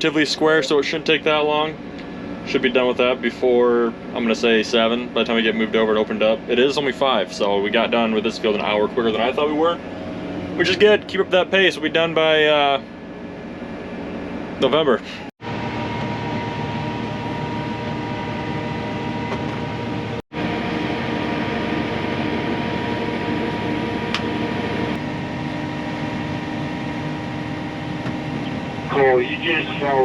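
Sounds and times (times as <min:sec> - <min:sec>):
combine harvester engine hum: 0:00.1 - 0:30.0.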